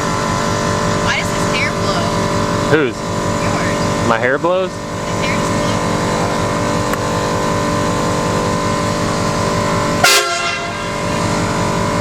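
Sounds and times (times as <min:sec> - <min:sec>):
truck engine and road noise: 0:00.0 - 0:12.0
train horn chord: 0:09.9 - 0:11.7.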